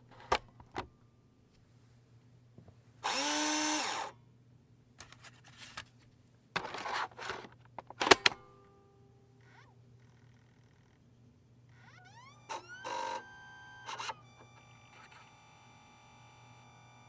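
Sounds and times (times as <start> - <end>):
faint steady hum: 0.1 - 17.0
disc drive motor whirring: 11.7 - 17.0.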